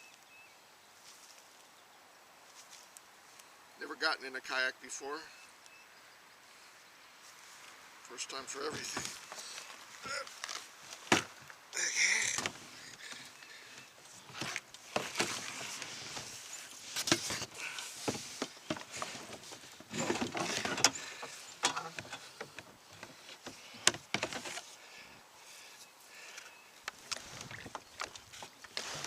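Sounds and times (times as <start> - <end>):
rustling: 12.2 - 29.0
knocks and scraping on kayak hull: 14.2 - 24.7, 26.9 - 29.0.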